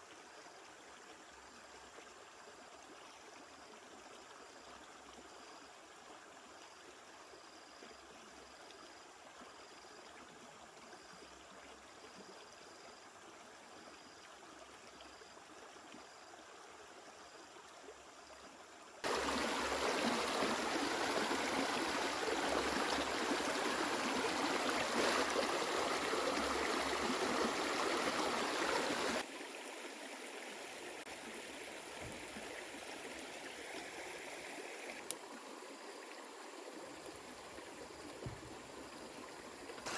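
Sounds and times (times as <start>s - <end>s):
stream water rushing: 19.0s - 39.9s.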